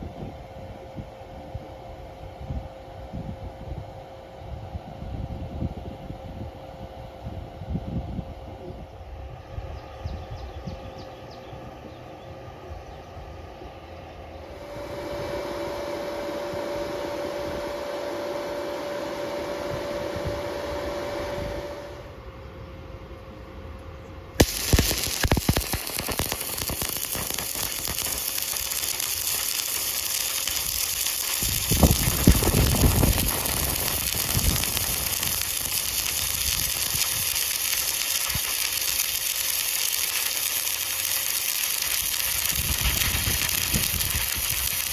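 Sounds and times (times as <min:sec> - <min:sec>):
steady hum: 0:00.0 - 0:44.9
welding arc crackling: 0:24.4 - 0:44.9.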